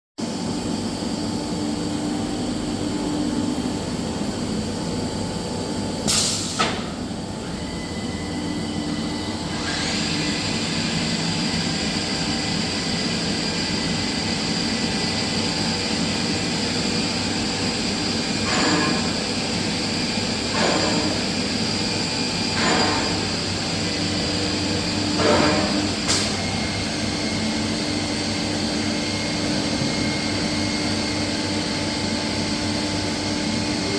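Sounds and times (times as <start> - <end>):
woodworking machine running: 6.6 - 33.9
high spindle whine: 7.0 - 33.9.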